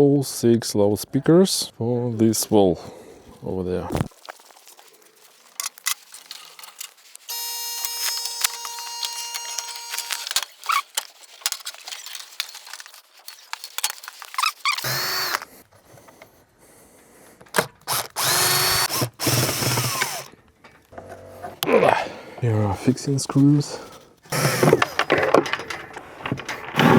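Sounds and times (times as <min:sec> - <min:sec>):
power drill whining: 0:07.3 - 0:10.9, 0:14.4 - 0:15.6, 0:17.6 - 0:20.3, 0:24.3 - 0:25.0.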